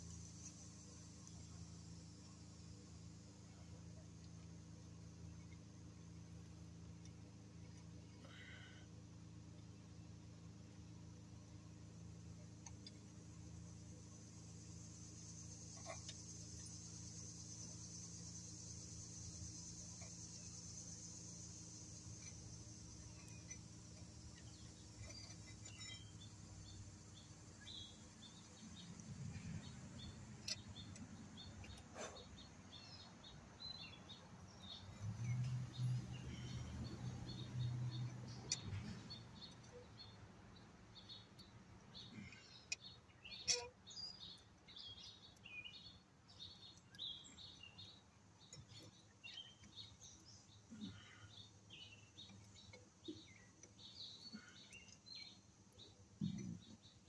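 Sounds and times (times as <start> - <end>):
birds chirping: 14.4 - 57.0.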